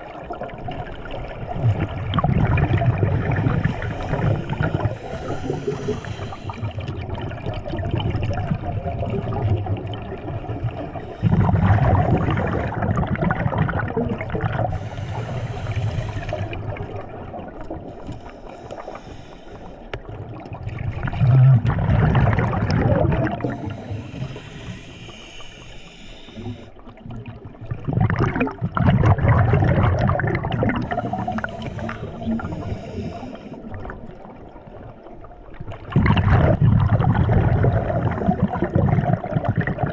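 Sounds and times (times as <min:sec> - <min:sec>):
bubbles gurgling underwater: 0:00.0 - 0:18.8, 0:19.9 - 0:25.2, 0:26.4 - 0:39.9
diver breathing through regulator: 0:03.0 - 0:07.0, 0:10.8 - 0:13.0, 0:14.6 - 0:16.8, 0:17.9 - 0:20.0, 0:23.2 - 0:26.9, 0:30.5 - 0:33.8.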